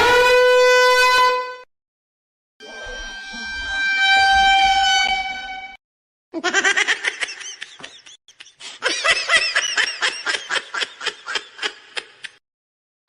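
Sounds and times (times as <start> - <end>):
high-pitched giggling laughter: 6.4 - 12.4.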